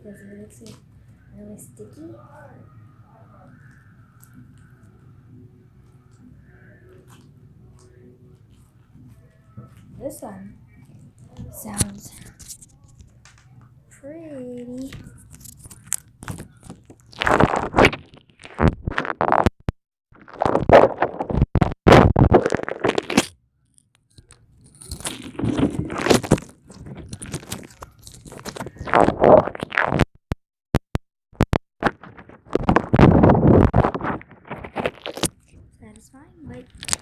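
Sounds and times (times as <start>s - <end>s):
slime squishing and crackling: 5.8s - 13.7s, 14.3s - 19.5s, 20.2s - 30.0s, 31.8s - 37.0s.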